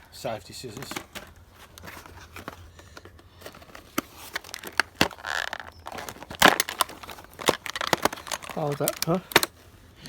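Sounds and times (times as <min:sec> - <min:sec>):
packaging rustle: 0:00.6 - 0:09.9
clicks and crackles: 0:00.8 - 0:09.7
scissors snipping packaging: 0:03.4 - 0:09.6.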